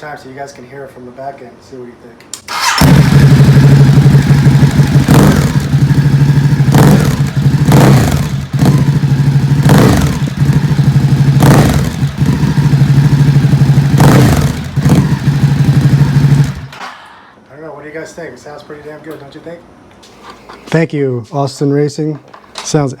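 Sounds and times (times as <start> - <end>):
motorcycle engine idling and revving: 2.5 - 16.8.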